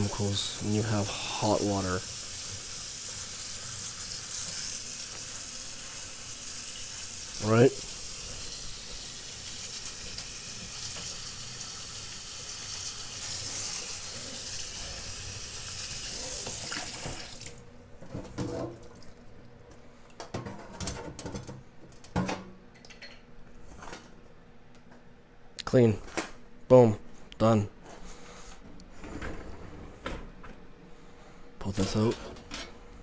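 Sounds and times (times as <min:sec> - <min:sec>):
tap water running into sink: 0:00.0 - 0:17.6.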